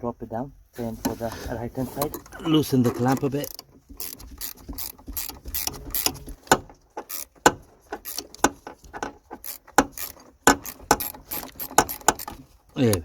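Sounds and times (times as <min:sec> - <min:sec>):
metallic clicks and knocks of tools: 0:02.1 - 0:13.0.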